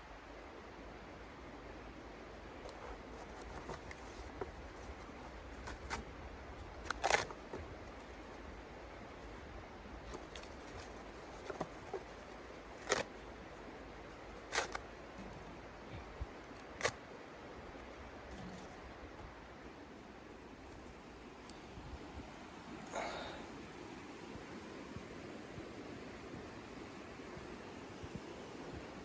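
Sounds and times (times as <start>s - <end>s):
steady soft hiss: 0.0s - 29.0s.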